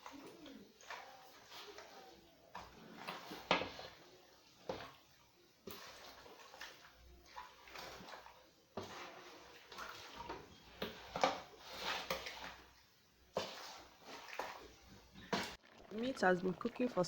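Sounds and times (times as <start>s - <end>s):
water splashing in pot: 13.3s - 17.0s.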